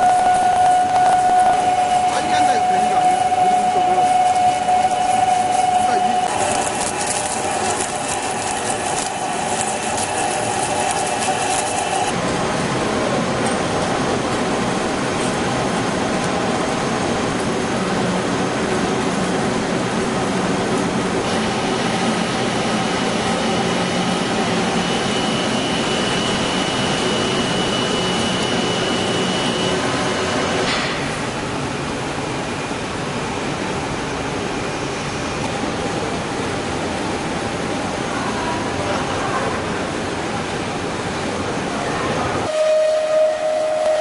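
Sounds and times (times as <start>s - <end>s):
thin high whine: 0.0s - 12.2s, 21.2s - 31.1s, 42.4s - 44.0s
lathe machining: 0.0s - 31.4s.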